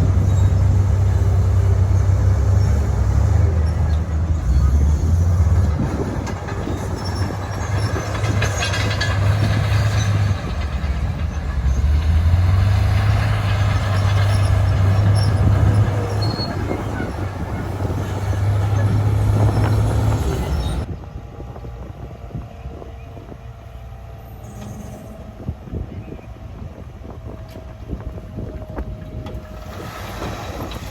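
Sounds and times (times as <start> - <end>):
diesel engine drone: 0.0 - 30.9
metallic clatter: 5.7 - 17.2.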